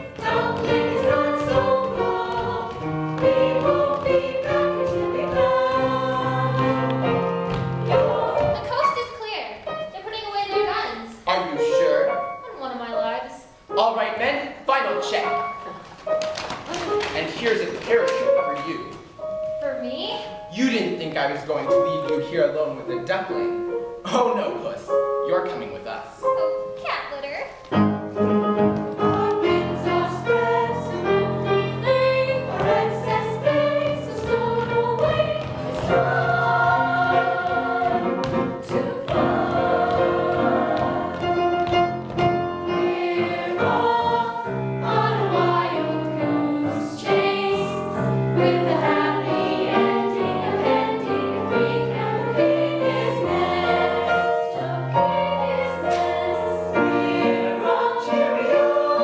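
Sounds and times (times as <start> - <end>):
choir singing with accompaniment: 0.0 - 9.4, 27.8 - 59.0.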